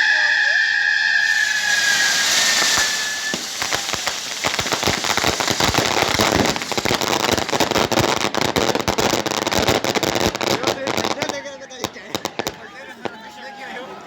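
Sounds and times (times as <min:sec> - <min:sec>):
firecrackers cracking: 0:01.2 - 0:12.6.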